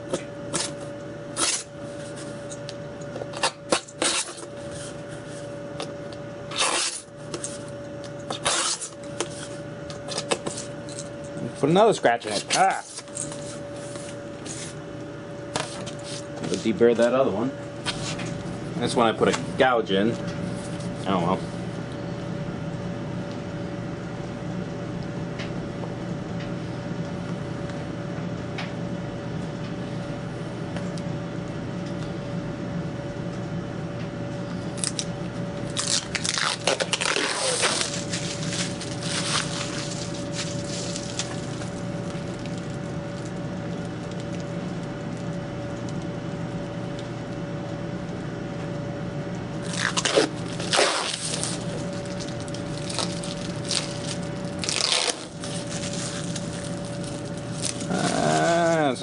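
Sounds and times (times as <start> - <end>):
steady background hum: 0.0 - 59.0
plastic film peeling and crinkling: 35.6 - 45.3, 49.6 - 58.5.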